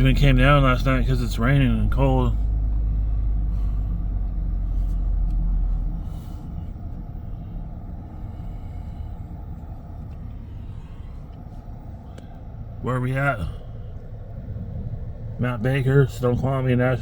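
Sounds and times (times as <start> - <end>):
car rumbling: 0.0 - 17.0.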